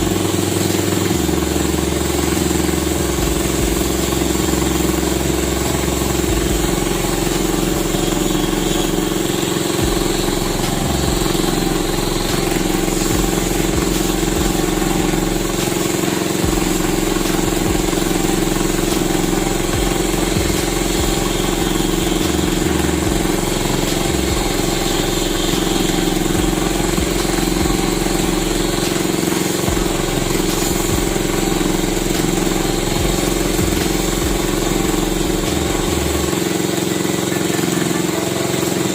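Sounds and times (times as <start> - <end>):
engine running steadily: 0.0 - 38.9.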